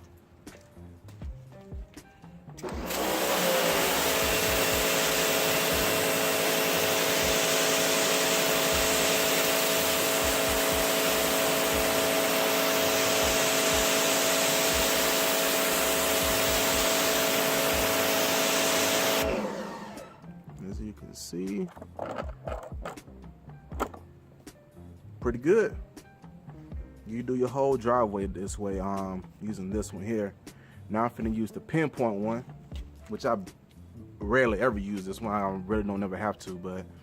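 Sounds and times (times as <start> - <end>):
water jet hissing: 2.6 - 20.1
pressure washer motor humming: 2.6 - 20.2.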